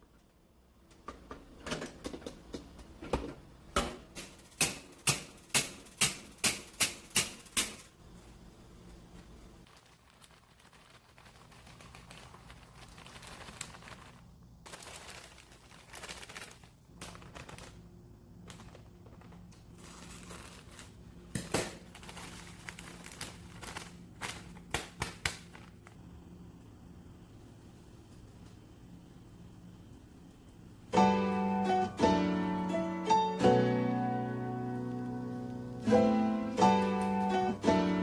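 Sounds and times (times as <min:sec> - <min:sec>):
rustling and crinkling: 0:07.8 - 0:26.0
low machine hum: 0:25.6 - 0:38.0.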